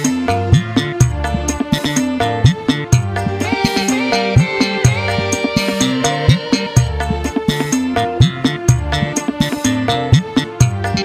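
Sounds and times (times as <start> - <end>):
held melody notes: 2.3 - 8.4.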